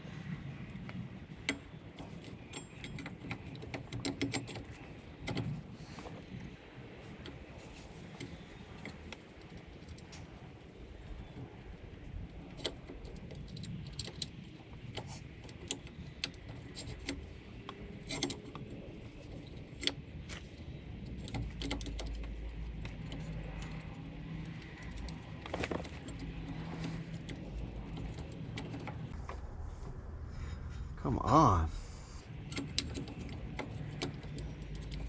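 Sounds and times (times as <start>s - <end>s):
metal tools clinking: 1.5s - 6.2s, 12.6s - 29.1s.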